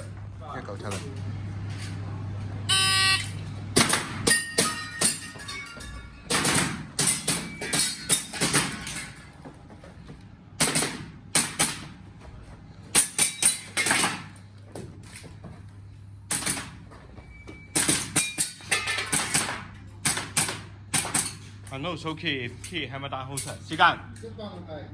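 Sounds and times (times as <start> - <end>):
airsoft pistol shots: 10.6 - 11.9.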